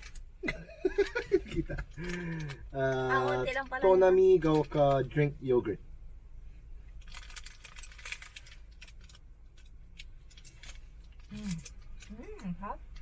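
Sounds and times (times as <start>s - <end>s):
small objects clicking and rustling: 1.0s - 3.8s, 7.0s - 13.0s.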